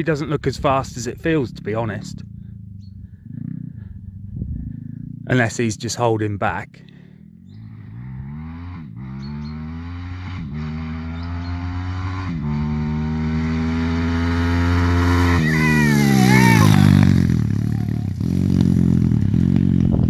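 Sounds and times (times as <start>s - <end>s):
pit bike engine accelerating: 1.3s - 5.4s, 6.8s - 20.0s.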